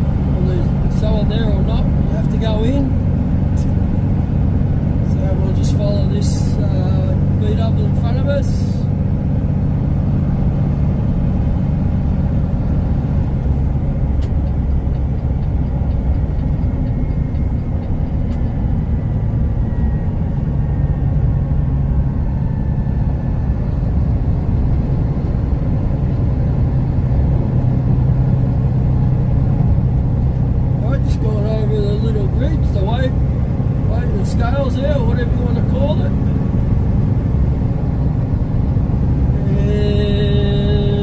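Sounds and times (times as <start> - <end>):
diesel truck engine drone: 0.0 - 41.0
tyres on highway: 0.0 - 41.0.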